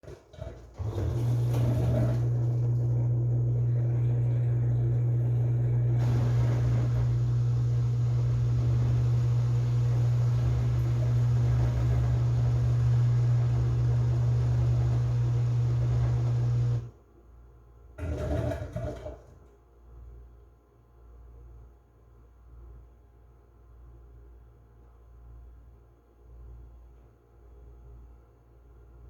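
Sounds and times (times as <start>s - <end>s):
washing machine humming: 0.0s - 17.0s, 18.0s - 19.4s.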